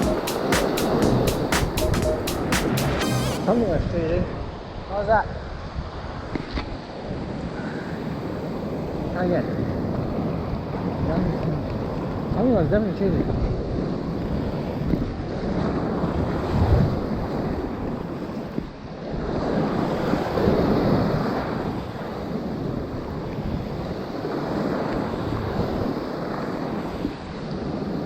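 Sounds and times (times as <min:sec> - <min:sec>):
ocean waves washing: 0:00.0 - 0:04.9.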